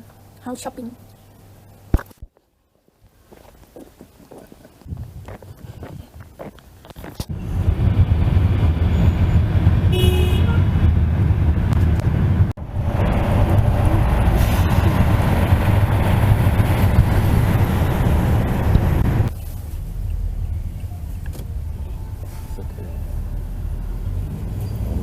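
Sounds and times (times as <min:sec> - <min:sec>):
road traffic rumble: 0:03.1 - 0:25.0
vehicle horn toot: 0:09.9 - 0:10.7.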